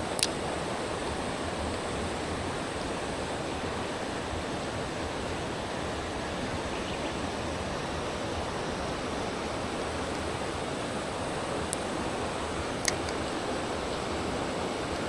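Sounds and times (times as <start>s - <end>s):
short sharp clicks: 0.2s - 0.4s, 12.8s - 13.2s.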